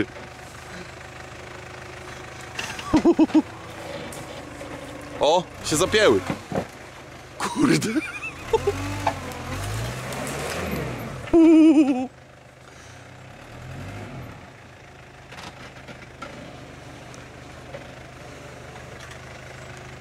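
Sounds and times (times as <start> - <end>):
engine revving: 2.1 - 11.6, 12.8 - 14.7.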